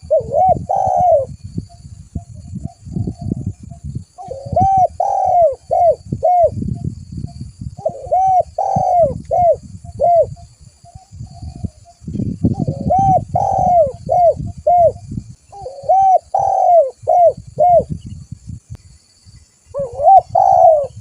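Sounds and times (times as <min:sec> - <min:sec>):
dove cooing: 0:00.0 - 0:01.4, 0:04.2 - 0:06.8, 0:07.8 - 0:18.0, 0:19.7 - 0:21.0.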